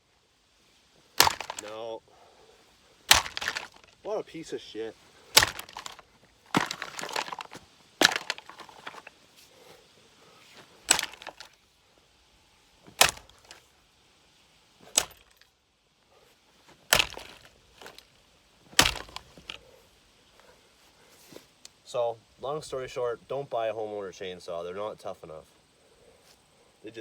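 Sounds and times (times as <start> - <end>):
plastic housing cracking: 1.2 - 1.8, 6.6 - 9.1
sharp blows striking chainsaw: 1.2 - 1.8, 3.1 - 3.9, 5.4 - 6.0, 13.0 - 13.6, 14.9 - 15.3, 16.9 - 18.0.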